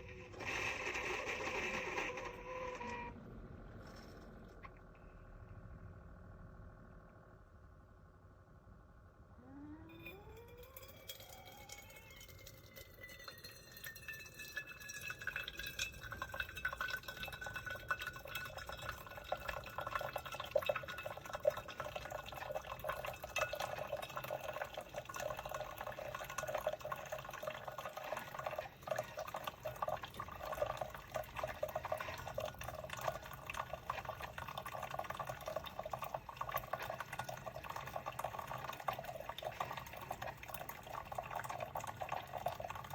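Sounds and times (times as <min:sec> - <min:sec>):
coffee maker brewing: 0:00.0 - 0:05.0, 0:09.4 - 0:42.9
liquid streaming and dripping: 0:10.4 - 0:42.9.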